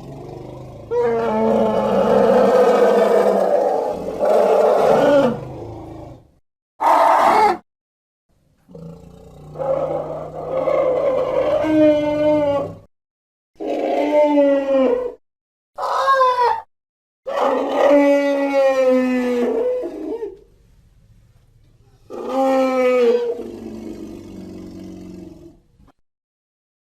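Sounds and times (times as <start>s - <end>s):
elephant growls and bellows: 0.0s - 7.6s, 8.7s - 12.9s, 17.3s - 20.4s, 21.9s - 25.7s.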